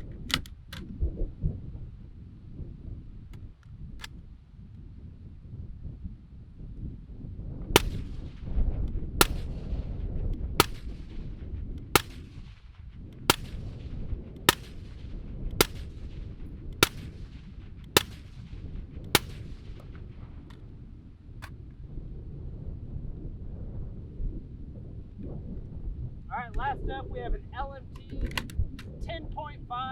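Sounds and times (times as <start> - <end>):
suppressed rifle shots: 0.0 - 1.0, 7.7 - 20.8.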